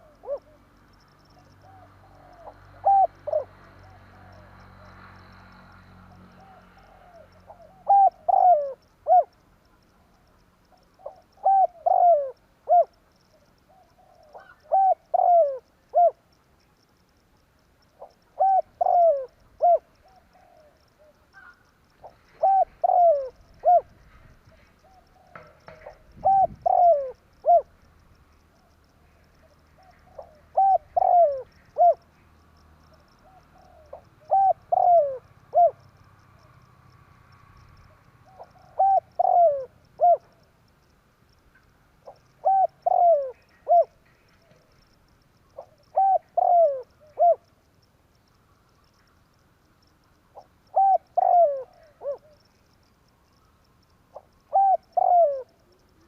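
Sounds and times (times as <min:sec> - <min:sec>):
dove cooing: 0:00.0 - 0:04.6, 0:06.1 - 0:16.3, 0:17.9 - 0:27.8, 0:28.5 - 0:32.0, 0:32.9 - 0:36.5, 0:37.9 - 0:40.4, 0:42.0 - 0:44.7, 0:45.5 - 0:47.5, 0:50.4 - 0:52.4, 0:54.1 - 0:56.0.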